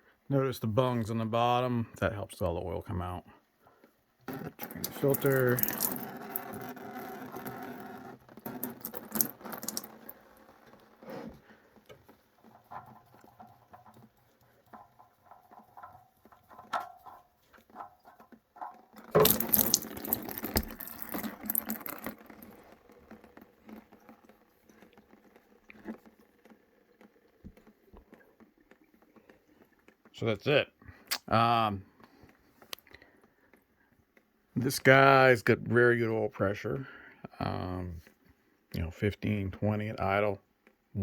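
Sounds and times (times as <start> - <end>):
oil dripping: 3.5 - 30.2.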